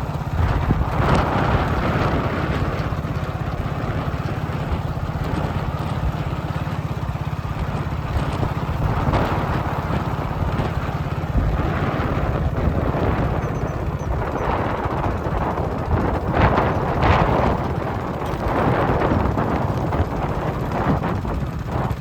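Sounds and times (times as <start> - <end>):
engine running with low rumble: 0.0 - 22.0
wind on microphone: 0.0 - 22.0.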